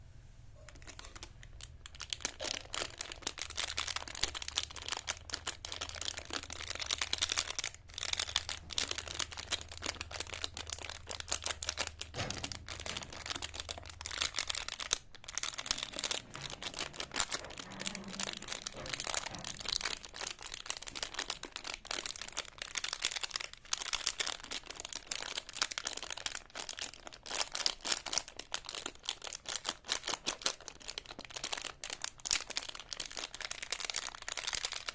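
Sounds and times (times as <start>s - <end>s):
faint low hum: 0.0s - 20.1s
plastic wrapper crinkling: 0.6s - 34.9s.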